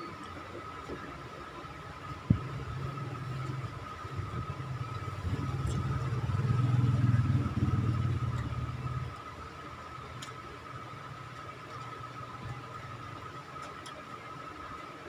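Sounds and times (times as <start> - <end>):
faint steady whine: 0.0 - 15.0
low engine hum: 2.1 - 9.4.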